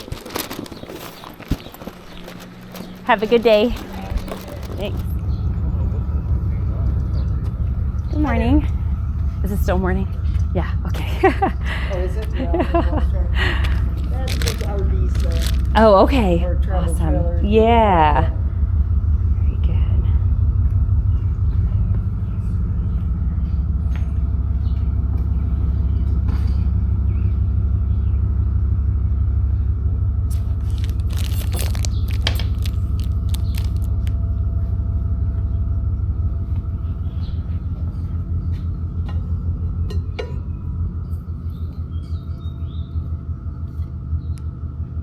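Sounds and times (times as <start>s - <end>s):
short clatter: 0.0s - 5.2s, 13.6s - 15.8s, 30.3s - 34.1s
car rumbling on the move: 0.0s - 45.0s.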